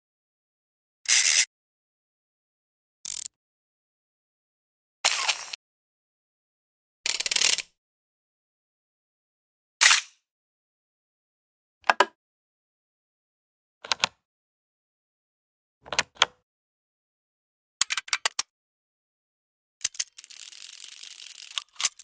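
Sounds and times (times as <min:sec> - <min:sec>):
mechanical gear clicks: 0:03.1 - 0:03.3, 0:07.1 - 0:07.6, 0:19.8 - 0:22.0.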